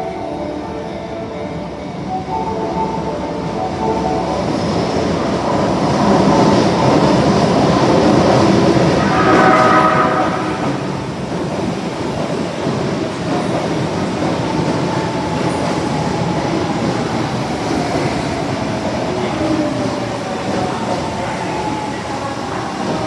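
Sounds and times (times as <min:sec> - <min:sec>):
subway train wheels rumbling: 0:00.0 - 0:23.0.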